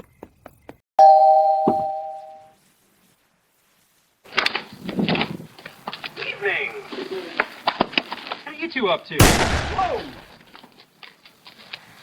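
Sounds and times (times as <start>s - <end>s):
two-tone doorbell chime: 1.0s - 2.5s.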